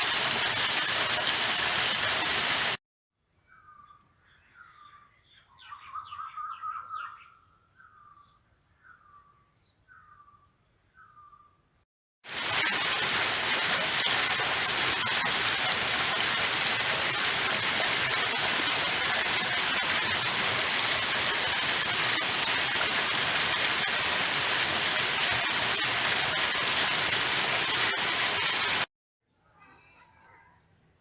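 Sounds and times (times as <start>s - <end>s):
dense rain falling: 0.0s - 2.8s, 12.3s - 28.9s.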